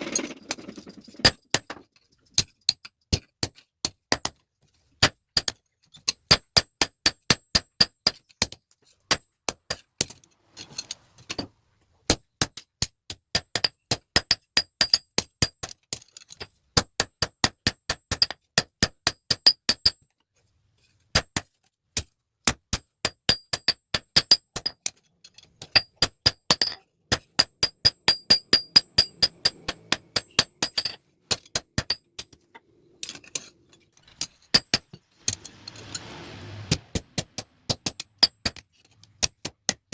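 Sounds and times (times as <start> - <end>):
hammer striking steel on anvil: 25.7 - 32.3.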